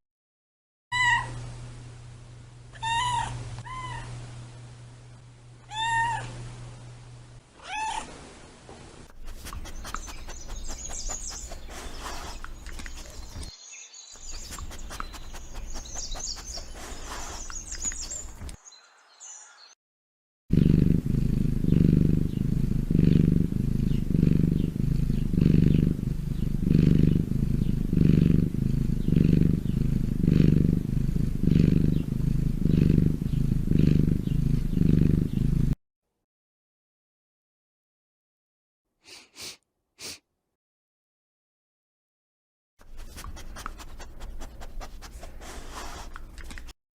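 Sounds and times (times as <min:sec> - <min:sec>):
cat purring: 0:09.1 - 0:13.5, 0:14.2 - 0:18.6, 0:20.5 - 0:35.8
high chirping: 0:09.5 - 0:19.6.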